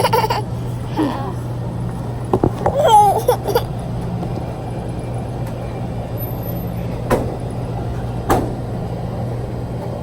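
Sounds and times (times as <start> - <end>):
vehicle engine humming: 0.0 - 10.0.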